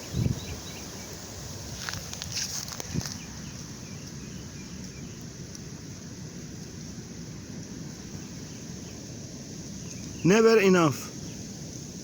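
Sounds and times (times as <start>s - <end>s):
small bird chirps: 0.0s - 1.2s, 8.1s - 10.5s
wind rumble on microphone: 0.0s - 10.2s.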